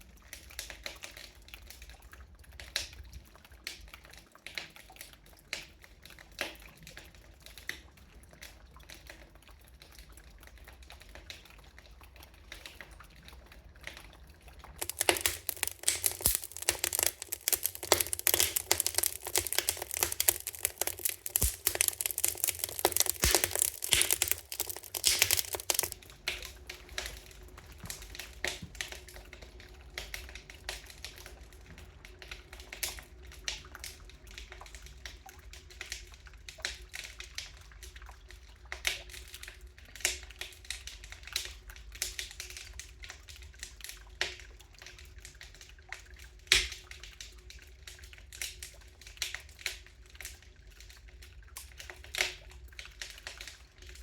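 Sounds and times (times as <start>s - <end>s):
wood fire crackling: 14.8s - 31.3s.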